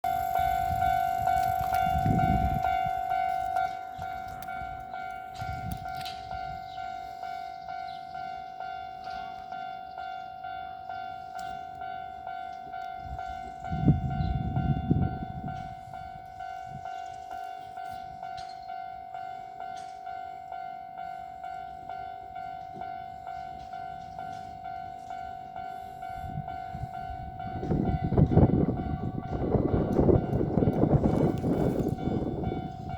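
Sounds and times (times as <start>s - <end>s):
train wheels rumbling on rails: 0.0s - 8.2s, 22.6s - 32.9s
level crossing bell ringing: 0.0s - 32.9s.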